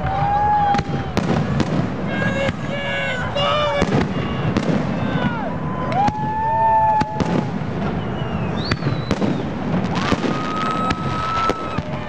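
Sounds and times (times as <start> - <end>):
firework bangs: 0.0 - 12.0
fireworks crackling rumble: 0.0 - 12.0
firework whistles: 3.8 - 12.0.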